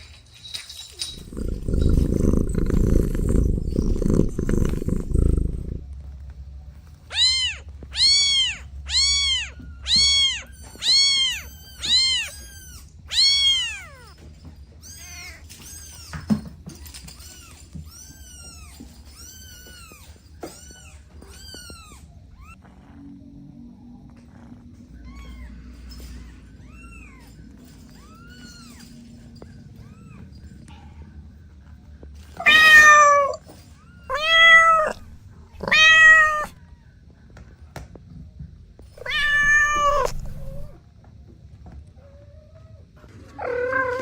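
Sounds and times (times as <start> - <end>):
kittens meowing: 1.2 - 5.8, 7.1 - 14.2, 32.4 - 36.8, 39.0 - 40.8
loud low rumbling: 1.2 - 5.9.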